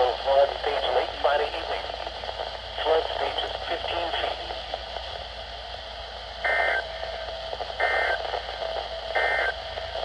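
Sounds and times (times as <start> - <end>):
radio hiss: 0.0 - 10.0
two-tone digital data bursts: 7.8 - 8.2, 9.1 - 9.6.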